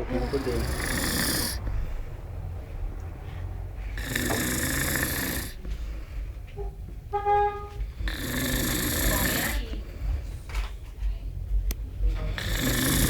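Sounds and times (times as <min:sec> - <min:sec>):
snoring: 0:00.0 - 0:02.0, 0:03.9 - 0:05.7, 0:08.0 - 0:09.8, 0:12.2 - 0:13.0
low rumble: 0:00.0 - 0:13.0.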